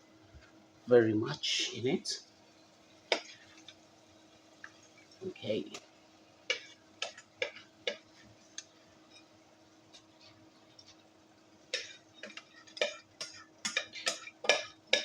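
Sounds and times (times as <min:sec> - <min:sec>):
faint steady hum: 0:00.0 - 0:15.0
utensil scraping a pot: 0:11.8 - 0:15.0.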